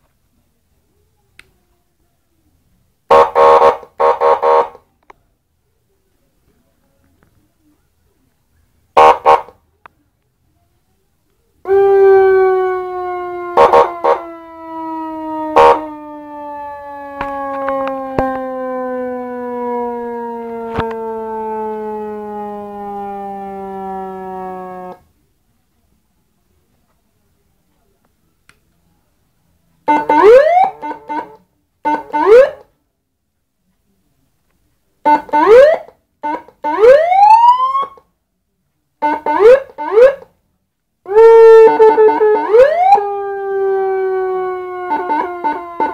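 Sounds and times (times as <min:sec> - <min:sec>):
electronic siren blasts: 0:11.7 - 0:25.0, 0:29.9 - 0:32.6, 0:35.1 - 0:38.0, 0:41.1 - 0:45.9
long siren tone sinking in pitch: 0:11.7 - 0:25.0, 0:41.1 - 0:45.9.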